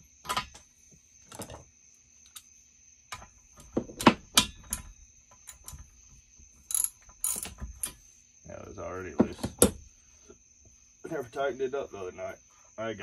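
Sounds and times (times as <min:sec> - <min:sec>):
metal hand tools clinking: 0:06.6 - 0:08.0.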